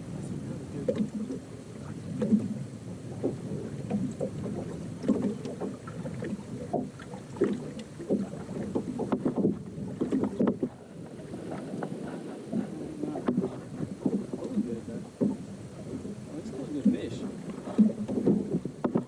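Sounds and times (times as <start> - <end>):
waves slapping against boat hull: 0.0 - 19.0
wind and water noise: 0.0 - 19.0.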